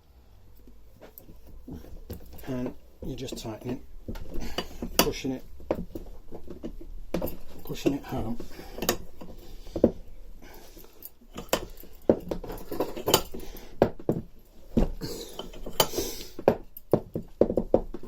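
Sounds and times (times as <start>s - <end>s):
metallic clinks and knocks: 0.6s - 18.0s.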